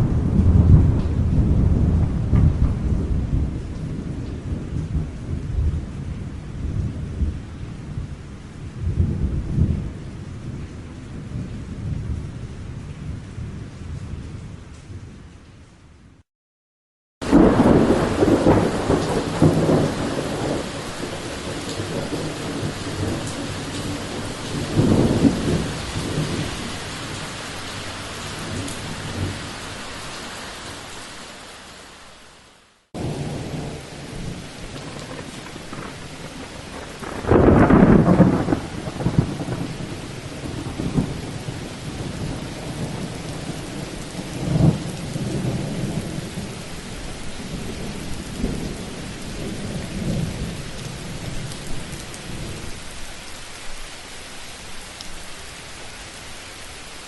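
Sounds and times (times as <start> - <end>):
thunder rumbling: 0.0 - 8.1, 17.2 - 29.6, 33.0 - 52.8
steady rain: 0.0 - 16.2, 17.2 - 57.0.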